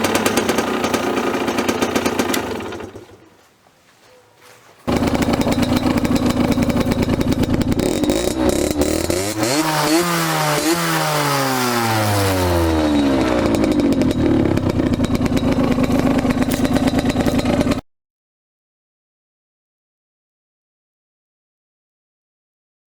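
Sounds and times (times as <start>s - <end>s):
scooter engine idling and revving: 0.0s - 3.4s, 4.8s - 17.8s.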